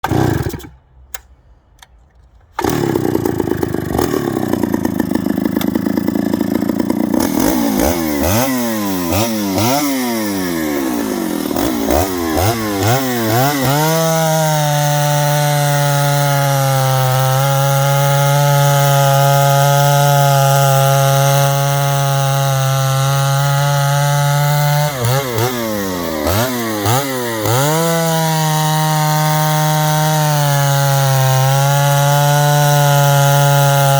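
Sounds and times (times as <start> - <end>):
chainsaw engine revving: 0.0 - 0.8, 2.6 - 33.9.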